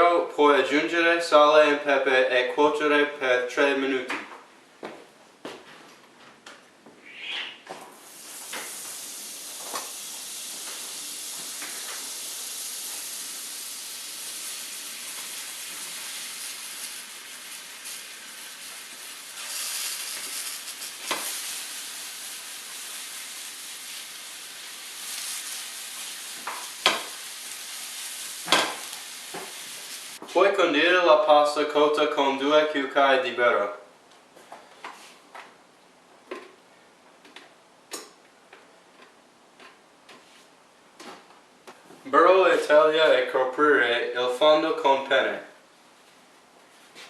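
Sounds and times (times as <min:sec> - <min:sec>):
mushrooms sizzling in pan: 0:08.0 - 0:30.2
stirring knocks in pan: 0:26.4 - 0:27.2.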